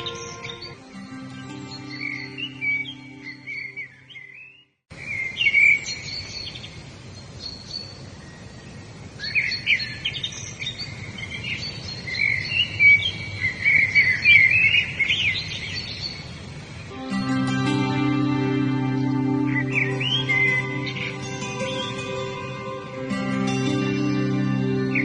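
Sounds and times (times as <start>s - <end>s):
calm instrumental music: 0.0s - 4.4s, 16.9s - 25.0s
birds chirping and trilling: 0.0s - 25.0s
steady outdoor hiss: 0.0s - 25.0s.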